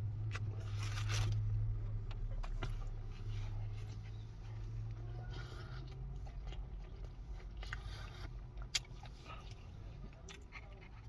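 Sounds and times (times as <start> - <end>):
person chewing burger: 2.4 - 11.0.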